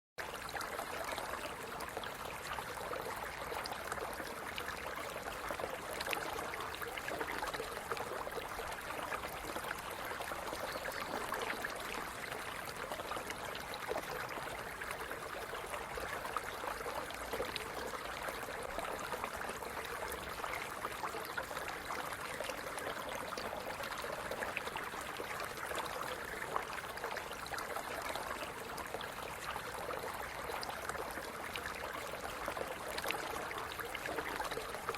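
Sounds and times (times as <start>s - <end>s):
stream gurgling over stones: 0.2s - 34.9s.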